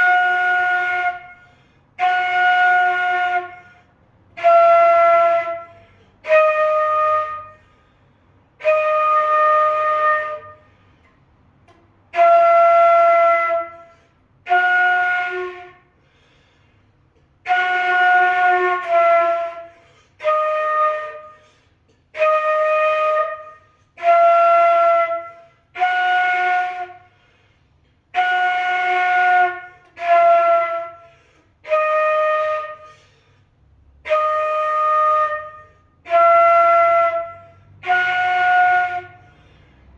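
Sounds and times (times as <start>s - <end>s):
flute held tones: 0.0s - 7.9s, 8.6s - 16.3s, 17.4s - 39.6s
breaths between notes: 7.6s - 8.5s, 16.0s - 17.1s, 27.1s - 28.0s, 32.9s - 33.8s, 39.2s - 39.9s.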